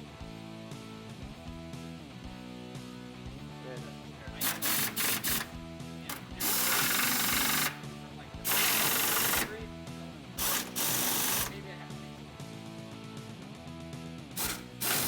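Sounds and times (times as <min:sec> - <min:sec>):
background music: 0:00.0 - 0:15.0
power drill driving screws: 0:04.4 - 0:07.8, 0:08.5 - 0:09.6, 0:10.4 - 0:11.6, 0:14.4 - 0:15.0.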